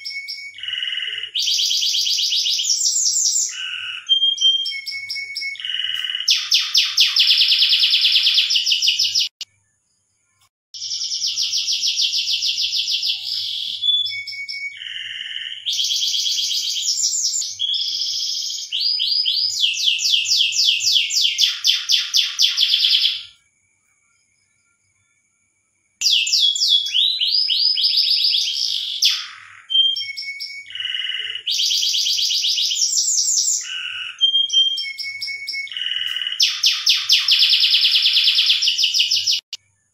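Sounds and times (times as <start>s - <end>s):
canary singing trills: 0.0s - 23.4s, 26.0s - 39.9s.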